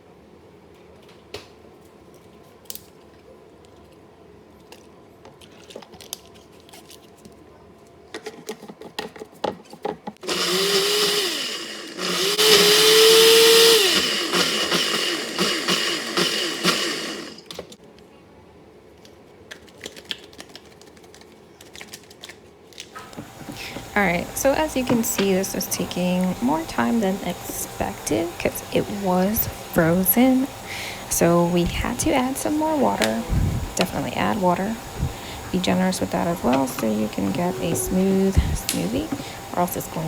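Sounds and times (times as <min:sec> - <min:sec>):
blender motor running: 0:10.2 - 0:17.5, 0:23.0 - 0:40.0.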